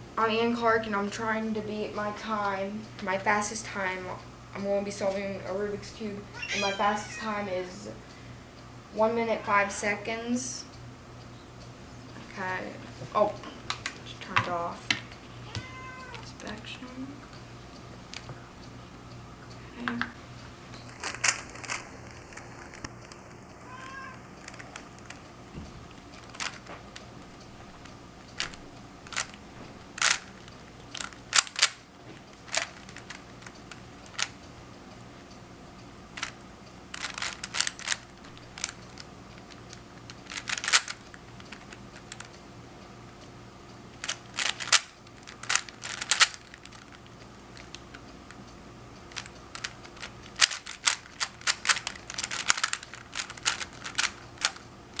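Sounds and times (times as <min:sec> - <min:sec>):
puzzle cube clicking: 0:30.0 - 0:31.8, 0:36.2 - 0:42.3, 0:44.0 - 0:47.0, 0:49.1 - 0:55.0.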